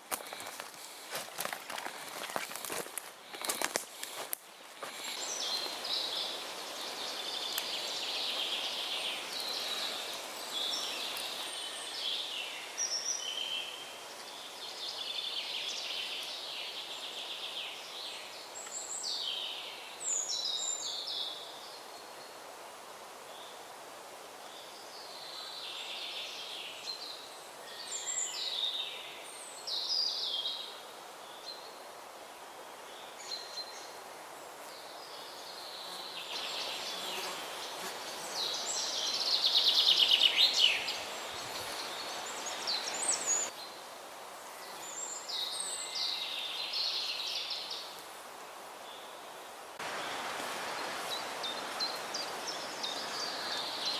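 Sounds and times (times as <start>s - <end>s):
steady background hiss: 0.0s - 53.9s
birds chirping and trilling: 35.2s - 43.6s.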